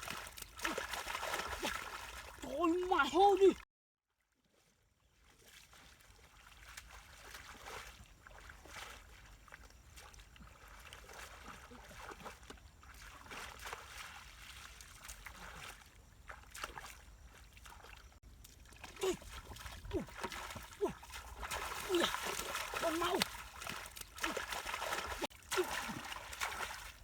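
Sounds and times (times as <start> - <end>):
muddy water sloshing: 0.0 - 3.6, 4.3 - 27.0.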